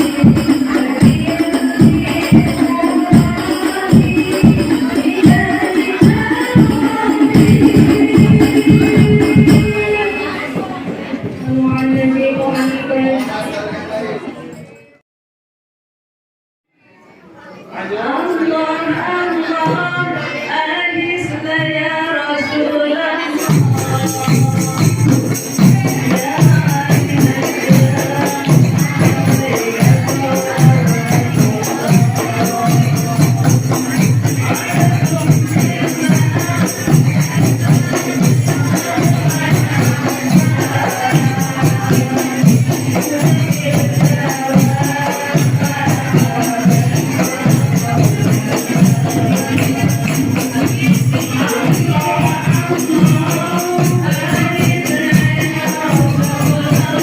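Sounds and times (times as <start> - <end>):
frame drums beating fast rhythm: 0.0 - 11.2, 23.3 - 57.0
group singing: 0.0 - 13.6, 17.7 - 57.0.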